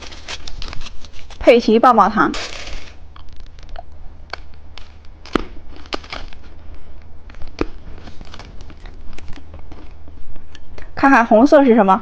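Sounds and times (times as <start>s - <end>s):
plastic crinkling: 0.0s - 10.0s
plastic packaging clicking: 2.4s - 6.6s.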